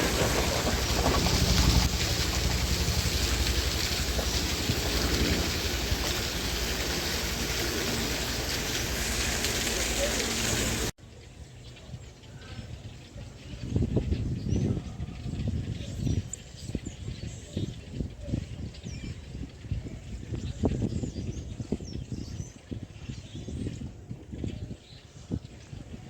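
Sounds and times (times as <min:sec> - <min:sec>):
heavy rain hissing: 0:00.0 - 0:10.9.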